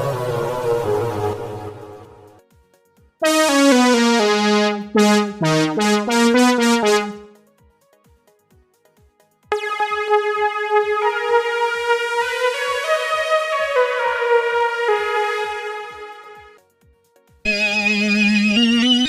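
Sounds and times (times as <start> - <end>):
bright struck synth phrase: 3.2 - 7.4
sustained synth tone: 3.2 - 7.4.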